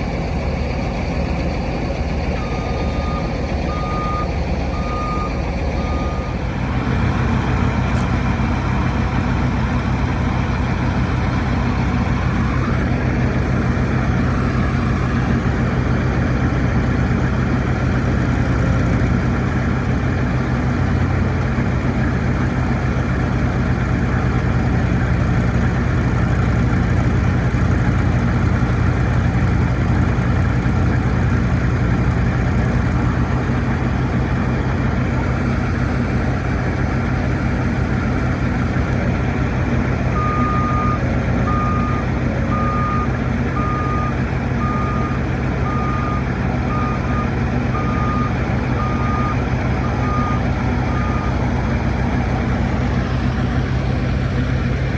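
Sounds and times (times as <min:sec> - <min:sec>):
heavy diesel engine running: 0:00.0 - 0:54.9
backup alarm beeping: 0:02.4 - 0:06.5.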